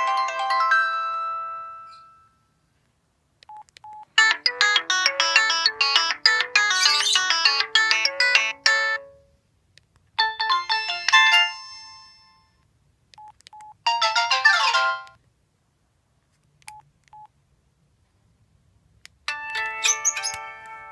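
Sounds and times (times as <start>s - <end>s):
phone ringtone melodies: 0.0s - 2.4s, 4.1s - 9.3s, 10.2s - 12.6s, 13.9s - 15.2s, 19.3s - 20.9s.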